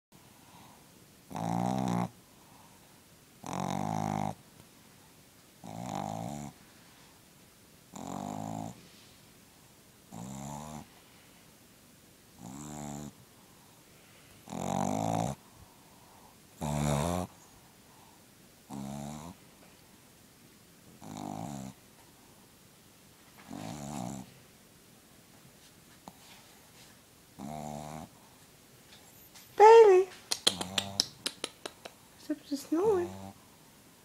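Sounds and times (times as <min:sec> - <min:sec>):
dog snoring: 0:01.3 - 0:02.2, 0:03.4 - 0:04.4, 0:05.6 - 0:06.6, 0:07.9 - 0:08.8, 0:10.1 - 0:11.0, 0:12.4 - 0:13.2, 0:14.4 - 0:15.4, 0:16.0 - 0:17.4, 0:18.7 - 0:19.4, 0:21.0 - 0:21.8, 0:23.4 - 0:24.4, 0:27.4 - 0:28.2, 0:30.5 - 0:31.0, 0:32.7 - 0:33.4.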